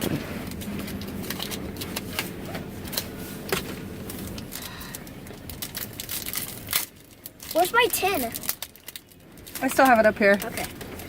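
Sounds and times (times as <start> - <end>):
car wash humming: 0.0 - 11.0.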